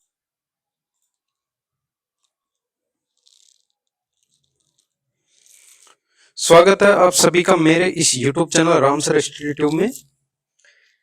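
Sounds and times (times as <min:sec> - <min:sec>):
soft rustle: 0:02.2 - 0:06.0.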